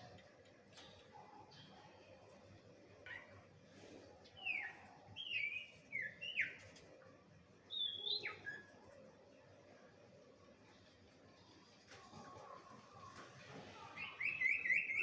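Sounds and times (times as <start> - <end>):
songbird whistled calls: 7.7 - 8.6, 14.0 - 15.0.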